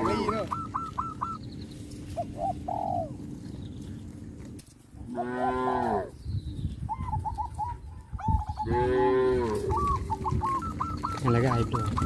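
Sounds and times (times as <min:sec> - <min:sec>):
birds chirping: 0:00.0 - 0:12.0
cows mooing: 0:05.0 - 0:06.1, 0:08.7 - 0:09.8.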